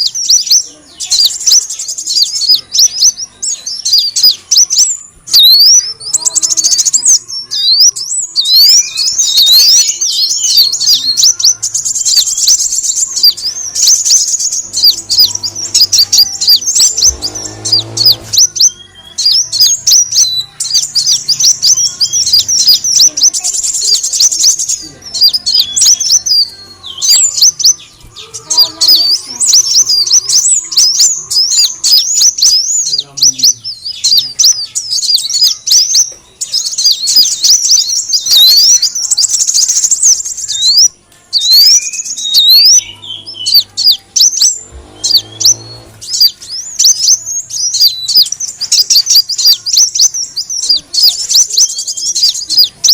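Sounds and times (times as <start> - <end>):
high-pitched bird chirps: 0.0 - 52.9.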